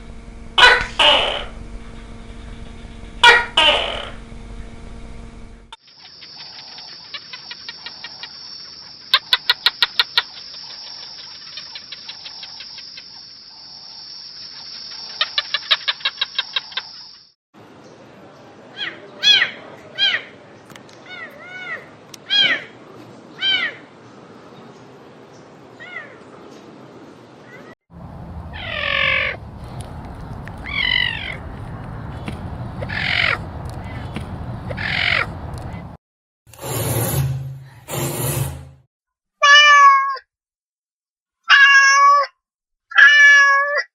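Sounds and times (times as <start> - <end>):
low steady rumble: 0.0 - 5.7
bird calling sharp repeated notes: 0.6 - 1.6, 3.2 - 4.2, 28.5 - 29.4, 32.8 - 34.1, 34.7 - 35.3.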